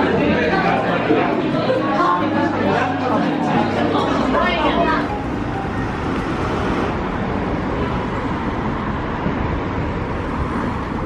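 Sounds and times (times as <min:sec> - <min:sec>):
moving vehicle rumble: 0:03.5 - 0:11.0.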